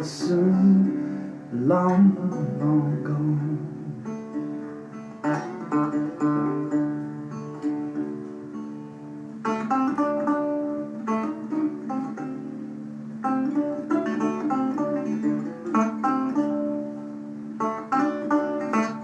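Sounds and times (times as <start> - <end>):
guitar playing: 0.0 - 19.0.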